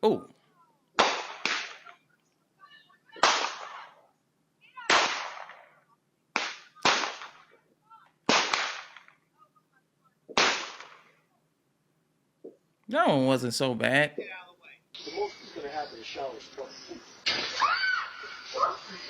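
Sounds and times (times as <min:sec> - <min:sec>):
fireworks exploding: 0:15.0 - 0:19.0.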